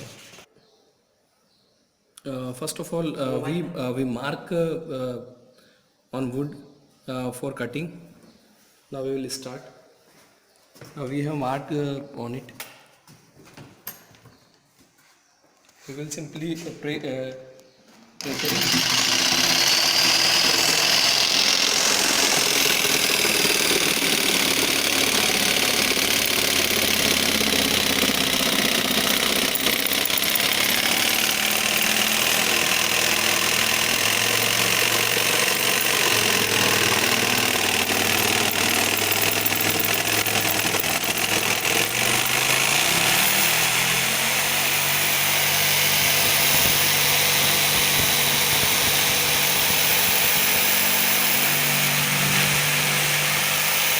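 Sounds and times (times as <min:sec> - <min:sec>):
electric jigsaw cutting wood: 0:00.0 - 0:00.5, 0:18.2 - 0:53.9.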